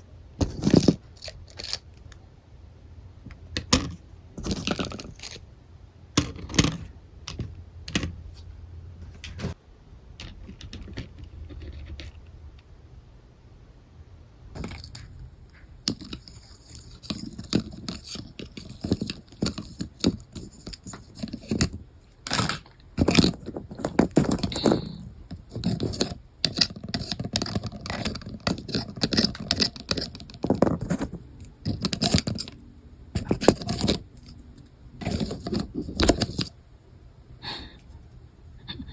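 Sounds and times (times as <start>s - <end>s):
plastic toy pieces clattering: 0.4s - 2.0s, 3.5s - 5.4s, 14.6s - 15.1s, 15.8s - 32.6s, 33.2s - 34.4s, 35.0s - 36.5s.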